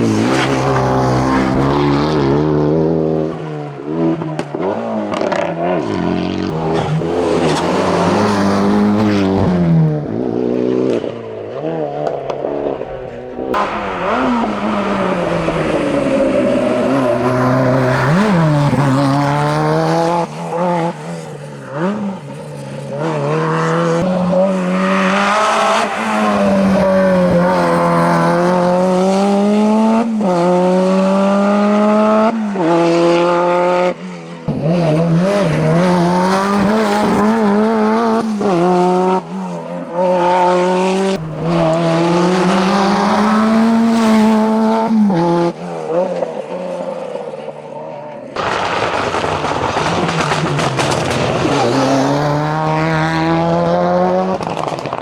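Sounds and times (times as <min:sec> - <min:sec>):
turbocharged engine revving: 0:00.0 - 0:21.1, 0:40.1 - 0:45.6, 0:48.3 - 0:55.0.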